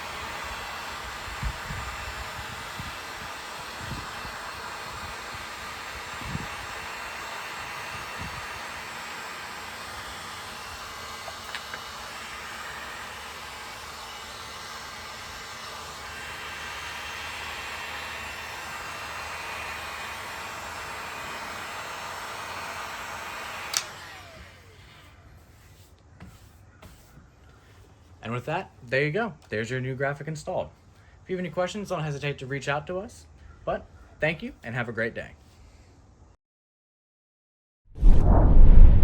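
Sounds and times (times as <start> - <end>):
fan winding down whine: 0.0 - 25.1, 38.0 - 39.0
heat gun blowing: 0.0 - 25.2
heat gun switch click: 23.7 - 24.0.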